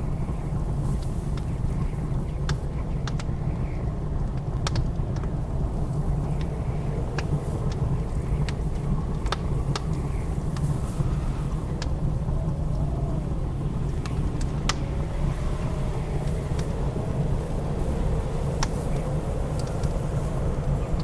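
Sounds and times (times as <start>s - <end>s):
wind rumbling and whistling: 0.0s - 21.0s
wood fire crackling: 0.2s - 21.0s.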